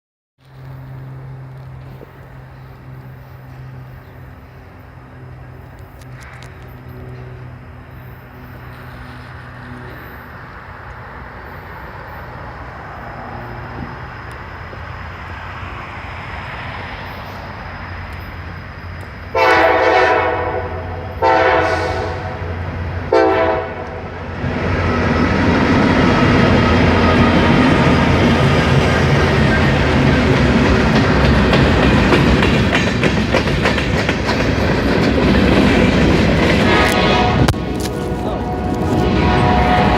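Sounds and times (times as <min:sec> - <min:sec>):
freight train rumble: 0:00.4 - 0:39.9
locomotive horn blasts: 0:19.3 - 0:24.2, 0:36.6 - 0:39.9
wheels clicking over rail joints: 0:25.1 - 0:39.1.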